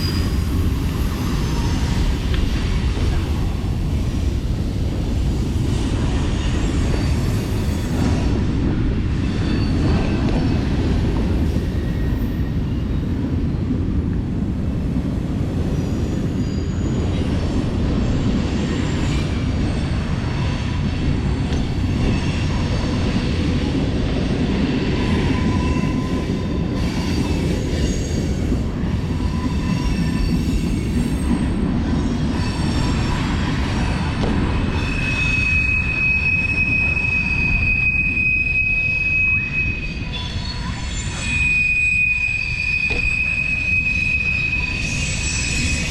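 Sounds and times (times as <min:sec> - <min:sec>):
high steady squeal: 0:32.2 - 0:45.9
bike squeaks and rattles: 0:34.3 - 0:45.9.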